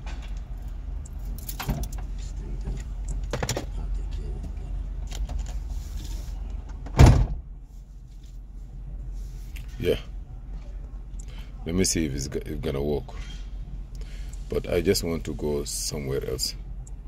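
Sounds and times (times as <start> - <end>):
low steady hum: 0.0 - 17.0
heavy thump: 6.8 - 7.4.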